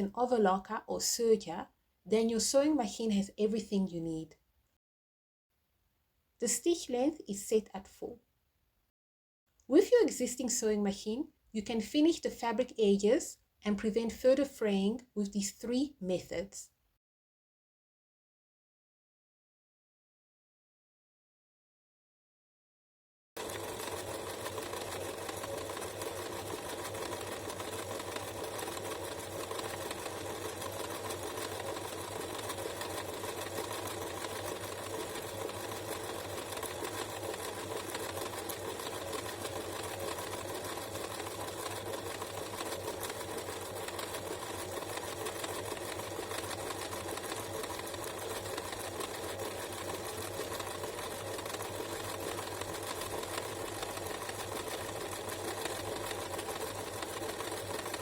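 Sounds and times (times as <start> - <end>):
sewing machine running: 23.4 - 58.0.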